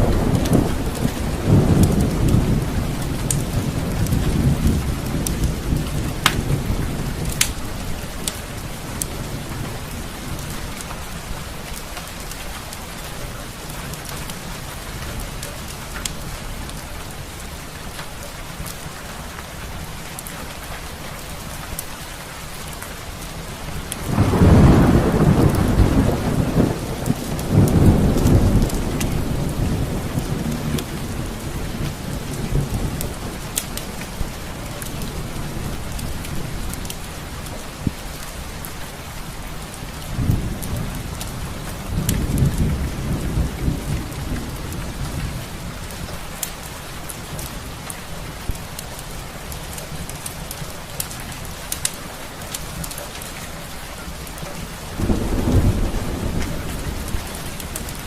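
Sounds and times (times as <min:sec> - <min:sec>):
rolling thunder: 0:00.0 - 0:11.3, 0:23.8 - 0:38.1, 0:40.0 - 0:46.5, 0:55.0 - 0:58.0
steady rain: 0:00.0 - 0:58.0.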